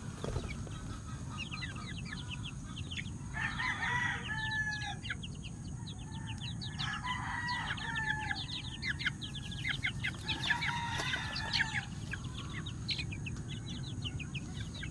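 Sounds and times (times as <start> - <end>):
low constant rumble: 0.0 - 3.6, 8.3 - 14.9
roosters crowing: 0.0 - 14.9.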